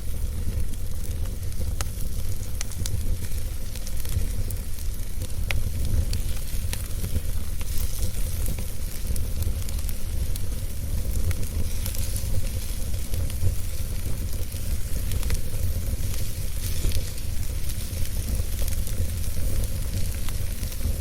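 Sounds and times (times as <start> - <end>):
burning logs crackling and popping: 0.0 - 21.0
fire flames rumbling: 0.0 - 21.0.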